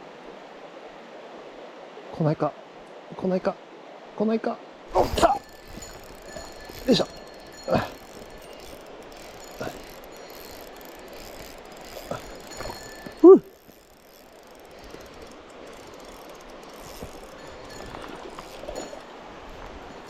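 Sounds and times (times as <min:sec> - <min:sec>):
stream water rushing: 0:00.0 - 0:20.0
fishing reel cranking: 0:05.0 - 0:20.0.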